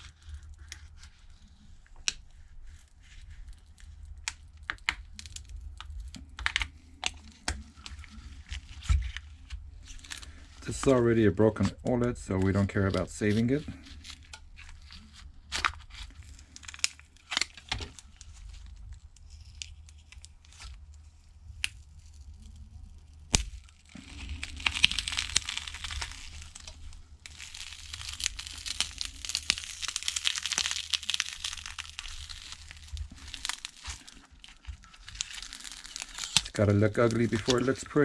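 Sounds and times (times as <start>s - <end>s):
small clicks and cracks: 0.0s - 11.0s, 11.6s - 38.0s
screen crackling and tearing: 0.0s - 38.0s.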